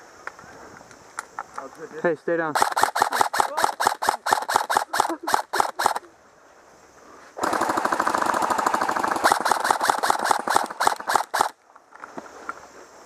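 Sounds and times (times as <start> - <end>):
airsoft rifle rapid firing: 2.6 - 6.0, 7.4 - 11.6.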